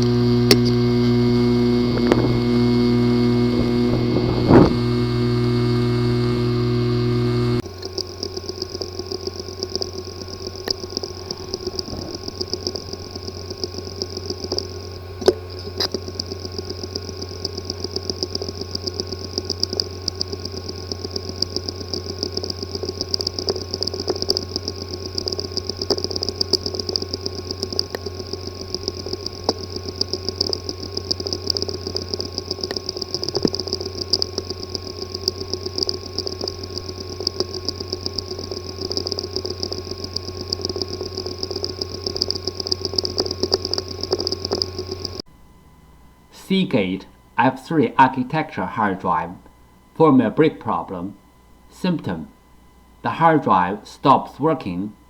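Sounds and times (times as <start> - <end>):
hard drive ticking and clicking: 0.0 - 45.3
hard drive whirring buzz: 0.0 - 55.0.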